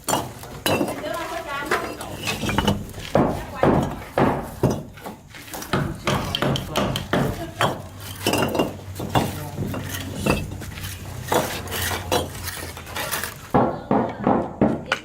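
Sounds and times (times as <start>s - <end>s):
dishes and utensils clattering: 6.2s - 13.5s.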